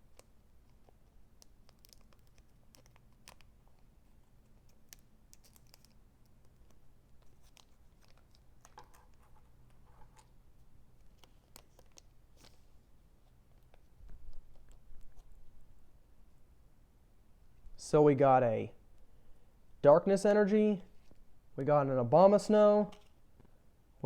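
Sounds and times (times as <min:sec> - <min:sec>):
trading cards rustling: 0:00.0 - 0:15.7
low room hum: 0:00.0 - 0:24.0.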